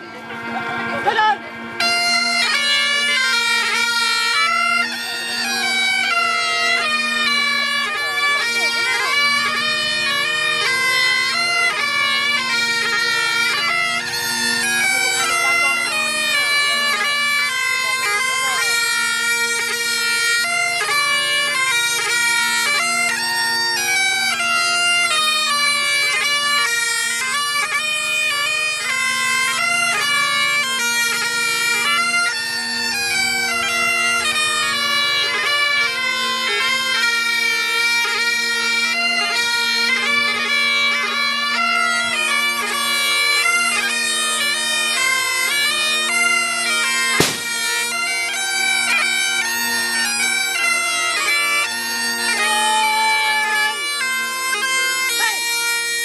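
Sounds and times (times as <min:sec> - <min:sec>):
bagpipes playing: 0:00.0 - 0:56.0
sharp click: 0:47.2 - 0:47.6.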